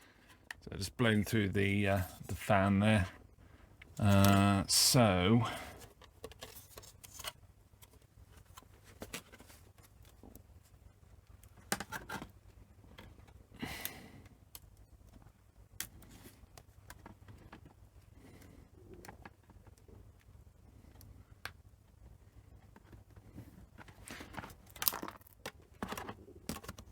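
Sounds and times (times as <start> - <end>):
faint low hum: 0.0 - 24.5
plastic laptop parts clicking: 23.8 - 26.9.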